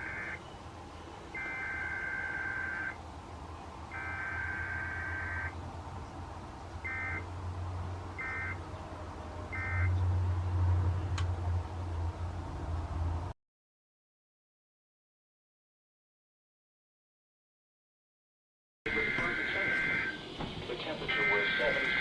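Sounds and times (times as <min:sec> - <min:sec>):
raspy two-tone data bursts: 0:01.4 - 0:03.0.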